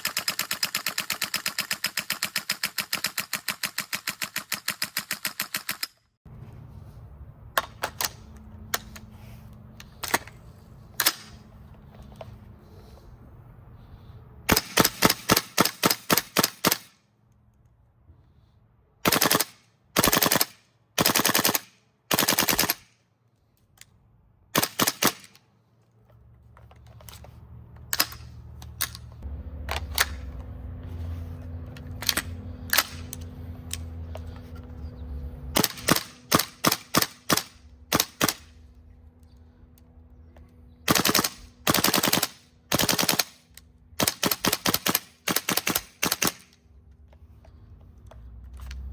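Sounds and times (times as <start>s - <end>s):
airsoft rifle firing bursts: 0.0s - 5.9s, 14.5s - 17.0s, 19.0s - 22.9s, 24.6s - 25.4s, 35.6s - 38.5s, 40.9s - 46.5s.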